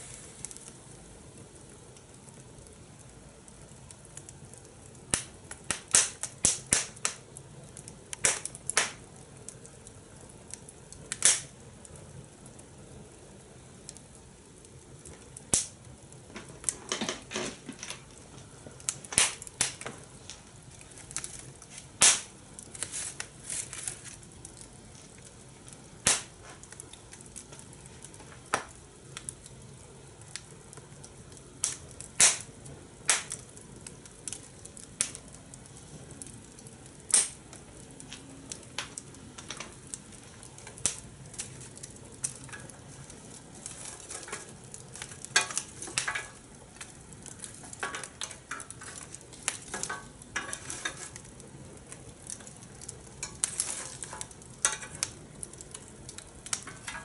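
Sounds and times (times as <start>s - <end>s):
faint steady hiss: 0.0s - 57.0s
fire crackling and popping: 0.0s - 57.0s.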